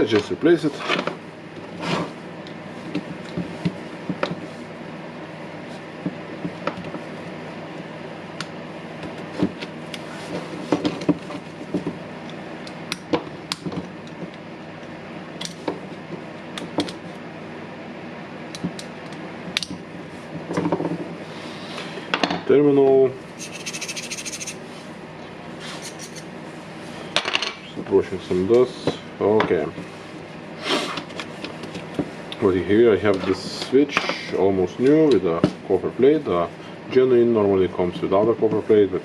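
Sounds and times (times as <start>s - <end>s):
steady low hum: 0.0s - 37.4s.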